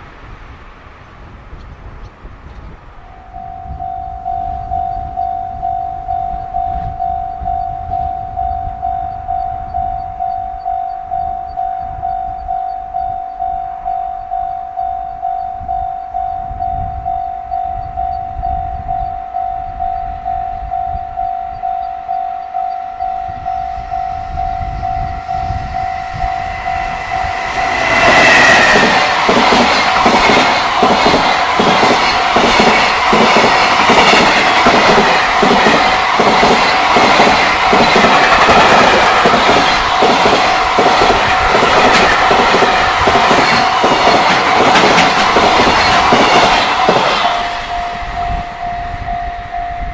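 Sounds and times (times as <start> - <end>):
level crossing bell: 3.2 - 27.4, 47.3 - 49.9
train wheels clacking: 21.8 - 48.6.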